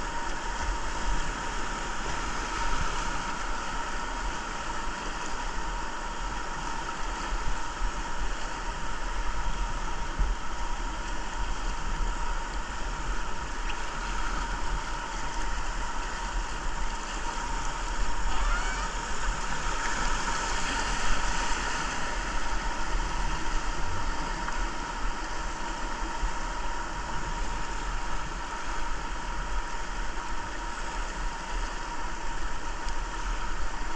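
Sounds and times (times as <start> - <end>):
wind rumble on microphone: 0.0 - 33.9
river whitewater rushing: 14.5 - 26.8.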